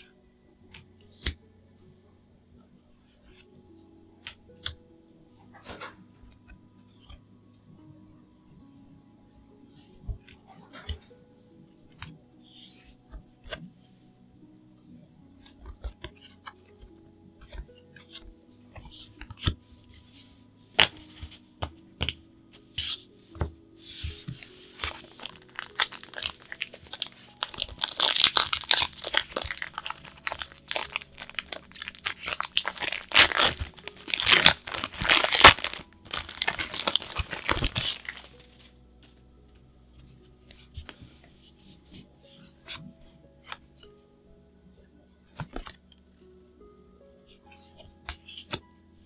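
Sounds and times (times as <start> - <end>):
wrapper tearing and crinkling: 24.6 - 38.7.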